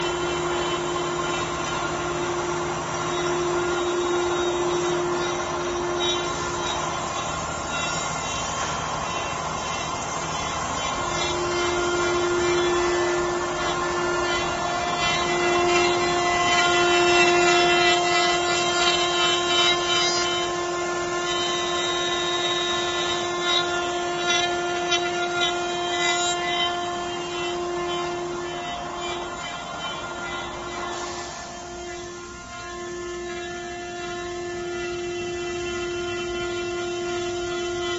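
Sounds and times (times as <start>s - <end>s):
higher machine tone: 0.0s - 17.9s, 24.8s - 36.3s
router spindle whine: 0.0s - 37.9s
rushing machining noise: 0.0s - 37.9s.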